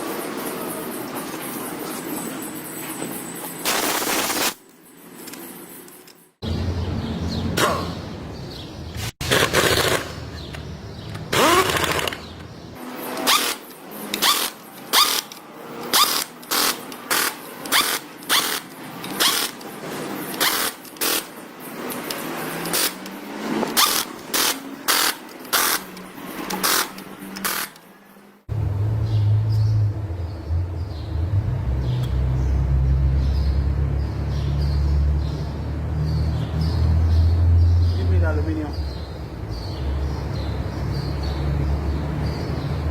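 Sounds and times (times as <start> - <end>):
power tool bursts: 3.6 - 4.6, 9.2 - 10.2, 11.3 - 12.3, 13.1 - 15.3, 15.9 - 19.6, 20.3 - 21.3, 22.6 - 27.8.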